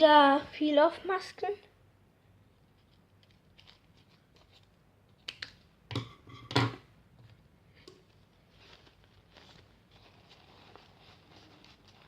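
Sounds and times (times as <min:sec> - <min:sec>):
objects knocking on tabletop: 0:05.9 - 0:06.8.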